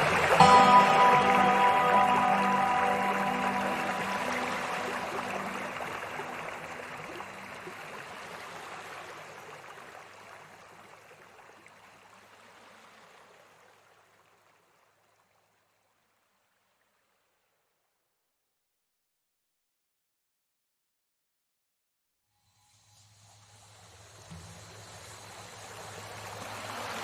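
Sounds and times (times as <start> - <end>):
calm music notes: 0.0 - 8.1
river water flowing: 0.0 - 17.4, 23.0 - 27.0.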